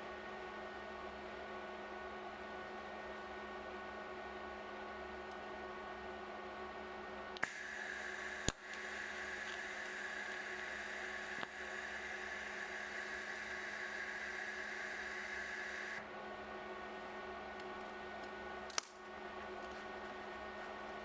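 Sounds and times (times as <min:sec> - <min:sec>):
electrical hum: 0:00.0 - 0:21.0
welding arc hissing: 0:07.4 - 0:16.0
sharp metallic click: 0:18.7 - 0:19.0.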